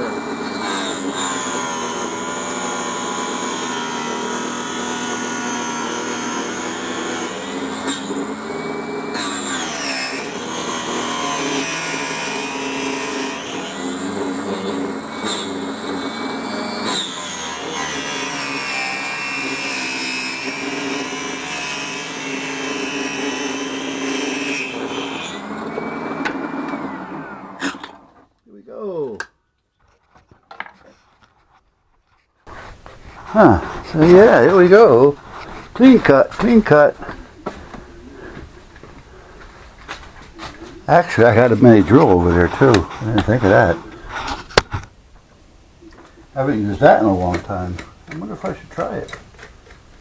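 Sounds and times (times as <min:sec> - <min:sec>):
power saw cutting plastic: 0:00.0 - 0:28.3, 0:40.4 - 0:44.9, 0:46.4 - 0:49.9.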